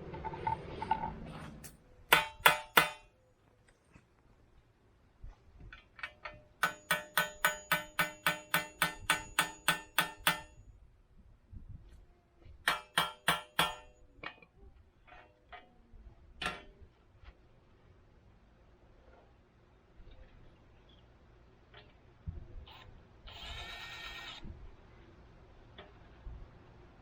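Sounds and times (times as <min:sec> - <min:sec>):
hammer striking metal: 0:02.1 - 0:03.1, 0:06.6 - 0:10.6, 0:12.6 - 0:13.9.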